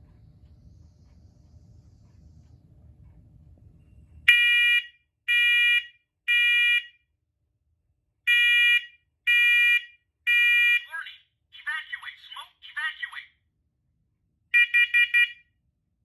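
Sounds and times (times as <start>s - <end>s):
smoke alarm beeping: 4.3s - 7.0s, 8.3s - 10.8s, 14.6s - 15.5s.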